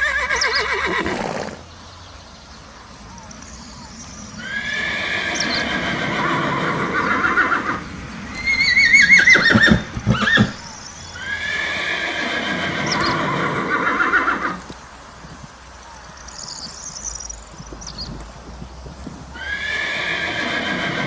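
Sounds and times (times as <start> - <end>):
horse neighing: 0.0 - 1.7, 4.4 - 14.6, 19.4 - 21.0.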